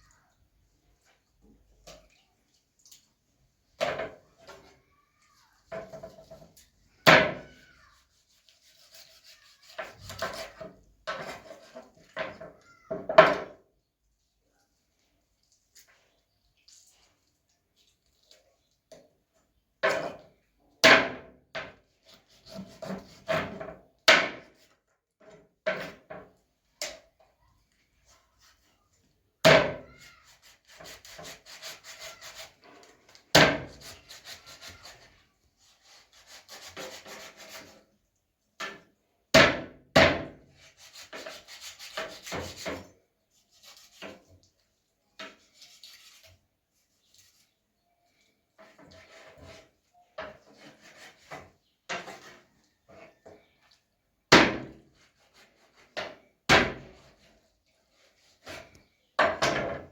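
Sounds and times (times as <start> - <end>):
scraping and rubbing: 7.8 - 12.2, 30.3 - 37.9, 40.6 - 44.4, 45.3 - 47.6, 48.6 - 53.2.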